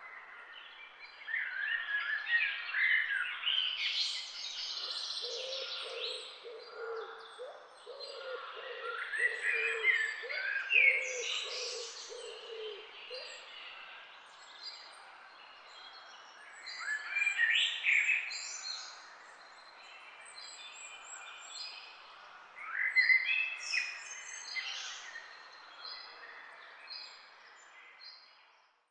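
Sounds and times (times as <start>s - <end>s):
birds chirping and singing: 0.9s - 15.0s.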